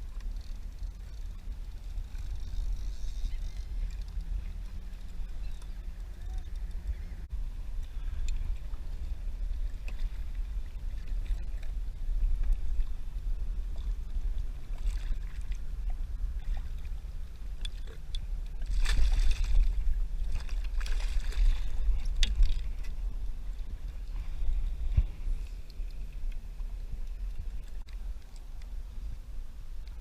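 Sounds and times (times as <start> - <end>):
wind rumble on microphone: 0.0 - 30.0
water splashing against kayak: 7.8 - 30.0.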